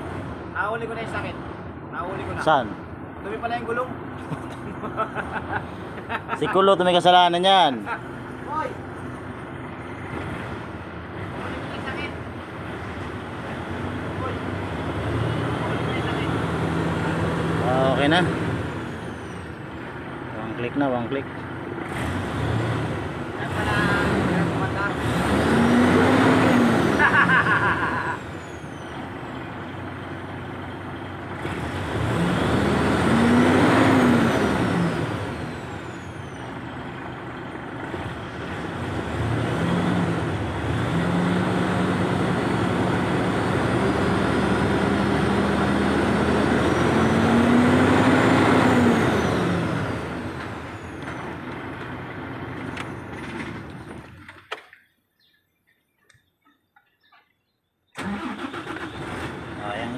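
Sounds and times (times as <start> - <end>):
diesel engine revving: 0.0 - 54.1, 58.0 - 59.9.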